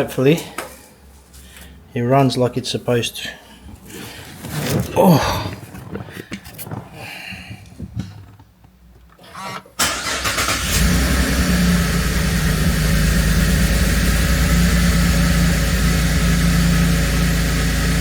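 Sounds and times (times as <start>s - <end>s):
car engine cranking and starting: 9.0s - 18.0s
car engine idling: 9.8s - 18.0s.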